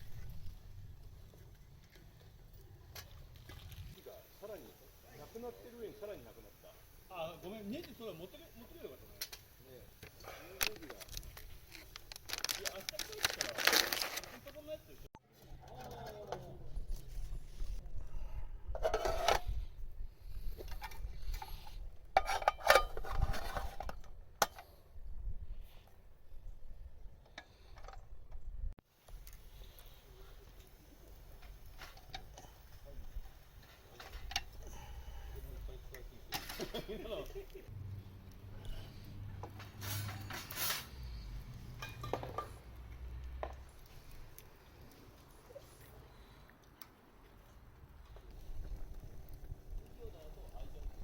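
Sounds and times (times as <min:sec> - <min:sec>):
camp gear clattering and clinking: 0:09.2 - 0:16.7, 0:18.7 - 0:19.6, 0:20.5 - 0:24.8, 0:30.5 - 0:37.6, 0:39.4 - 0:41.0, 0:41.7 - 0:42.6
cookware scraping rustle: 0:18.8 - 0:19.6, 0:20.6 - 0:24.0, 0:39.6 - 0:41.0.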